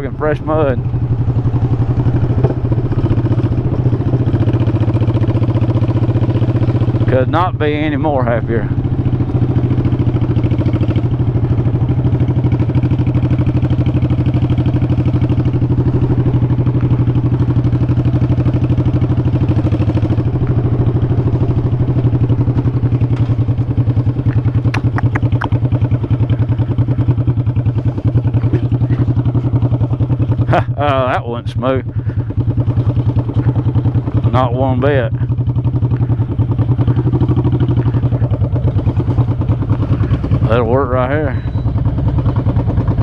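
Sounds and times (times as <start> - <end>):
motorcycle engine running: 0.0 - 43.0
short clicks: 24.3 - 25.6.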